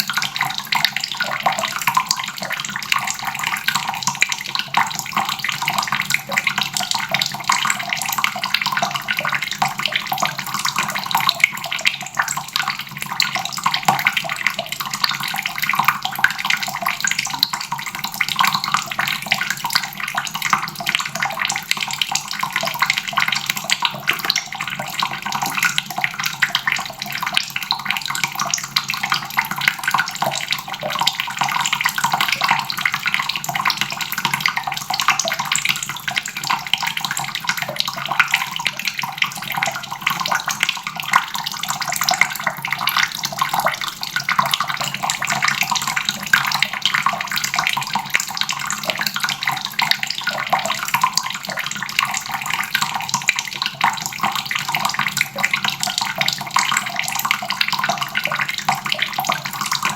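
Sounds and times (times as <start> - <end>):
faucet water splashing into basin: 0.0 - 59.9.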